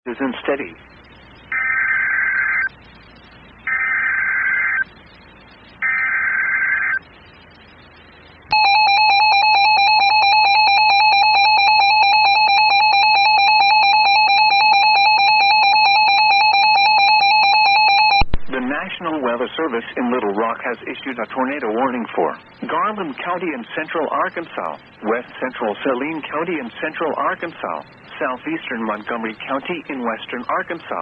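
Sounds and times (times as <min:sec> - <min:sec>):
steady attention tone: 0:00.1 - 0:31.0
warbling digital data tones: 0:00.2 - 0:21.1.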